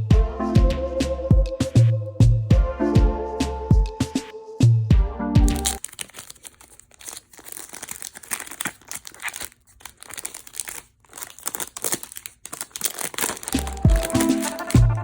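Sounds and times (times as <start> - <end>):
packaging wrapping crinkling: 5.4 - 15.0.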